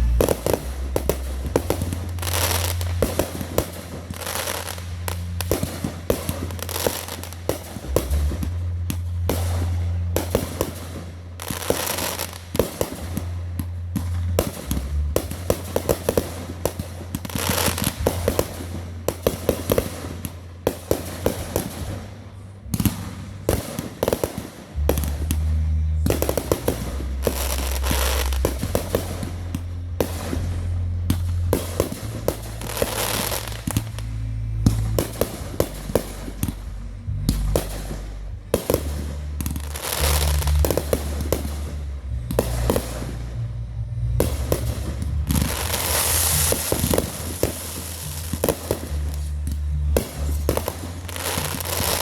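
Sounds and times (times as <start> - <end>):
fireworks popping and crackling: 0.0 - 43.4, 44.0 - 52.0
music with low notes: 0.0 - 52.0.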